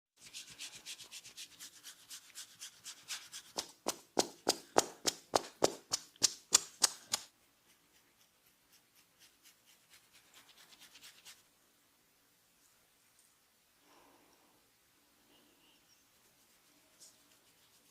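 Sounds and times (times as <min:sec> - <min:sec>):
hands stroking scalp and hair: 0:00.2 - 0:11.5, 0:16.1 - 0:17.9.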